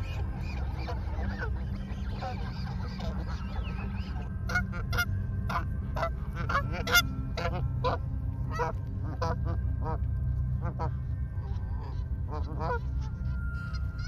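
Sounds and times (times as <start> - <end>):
geese honking: 0.0 - 14.0
steady low rumble: 0.0 - 14.0.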